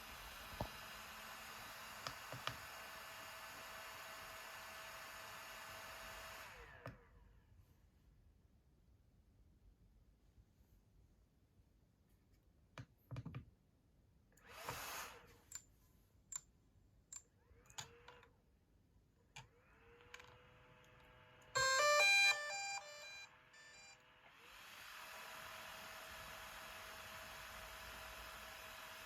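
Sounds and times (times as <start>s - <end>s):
clicks and taps: 12.3s - 13.6s
electronic startup chime: 21.6s - 24.0s.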